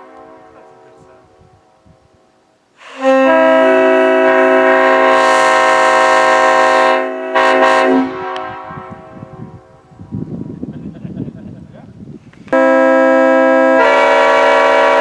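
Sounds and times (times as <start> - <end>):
train air horn chord: 0.0 - 1.2, 2.8 - 9.8, 12.5 - 15.0.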